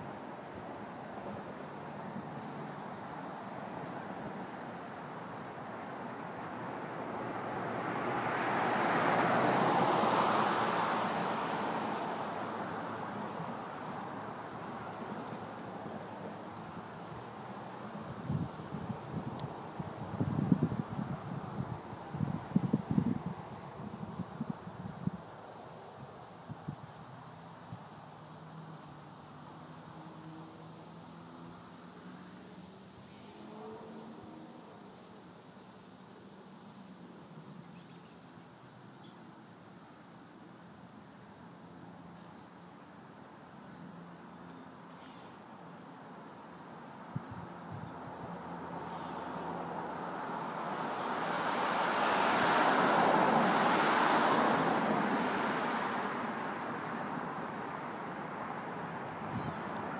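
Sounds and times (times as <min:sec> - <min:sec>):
insects: 0:00.0 - 0:59.9
vehicle passing close: 0:07.1 - 0:15.3, 0:47.8 - 0:59.9.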